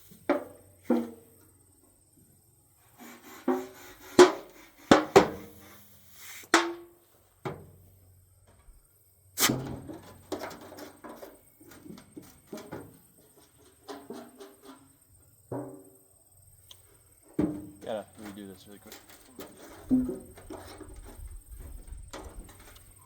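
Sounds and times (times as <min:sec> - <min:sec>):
knocks and clanks of metal cans: 0:00.1 - 0:01.4, 0:03.4 - 0:05.6, 0:06.5 - 0:07.8, 0:09.4 - 0:16.0, 0:17.2 - 0:23.0
light rattling and clatter: 0:09.8 - 0:15.9, 0:17.1 - 0:23.0.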